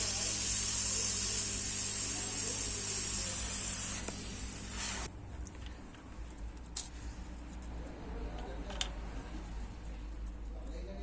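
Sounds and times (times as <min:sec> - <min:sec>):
hot air blower hissing: 0:00.0 - 0:05.1.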